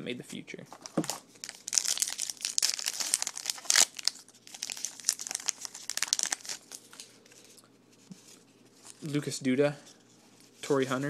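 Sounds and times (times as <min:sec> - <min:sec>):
foil wrapper crinkling: 0:00.7 - 0:07.6.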